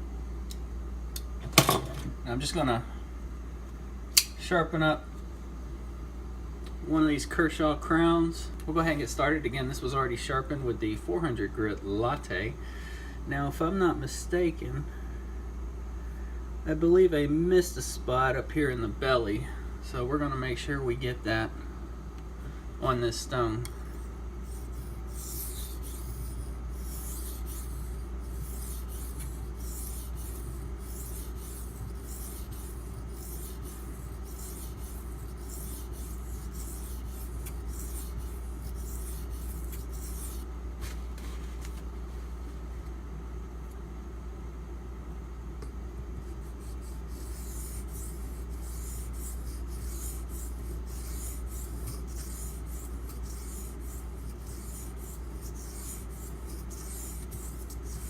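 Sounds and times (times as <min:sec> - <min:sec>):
steady low hum: 0:00.0 - 0:58.0
knife scraping on whetstone: 0:23.8 - 0:40.5, 0:46.2 - 0:58.0.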